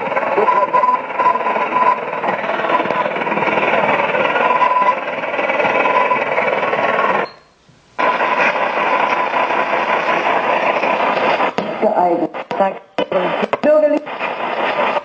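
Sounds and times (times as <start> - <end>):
radio static and interference: 0.0 - 7.3, 8.0 - 15.0
weak radio station signal: 0.0 - 15.0.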